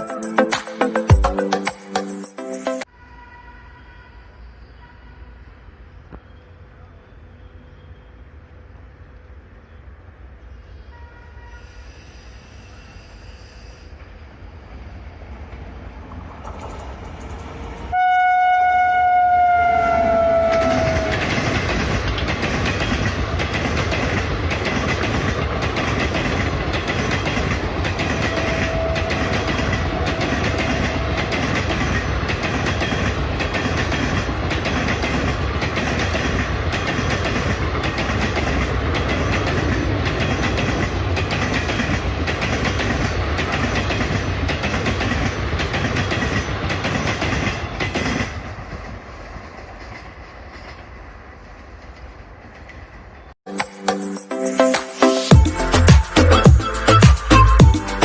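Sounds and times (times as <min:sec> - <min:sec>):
train horn: 0:02.9 - 0:05.8, 0:10.8 - 0:12.3, 0:17.9 - 0:21.3, 0:28.2 - 0:31.4
train coaches rumbling: 0:11.4 - 0:53.4
wheels clacking over rail joints: 0:20.2 - 0:53.2.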